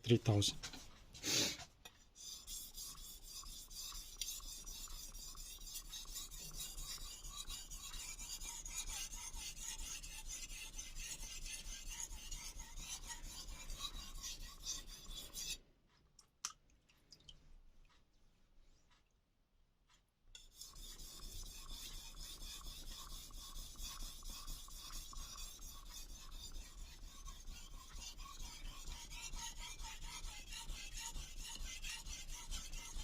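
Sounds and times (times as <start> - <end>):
knife scraping on whetstone: 2.2 - 15.6, 20.4 - 33.0.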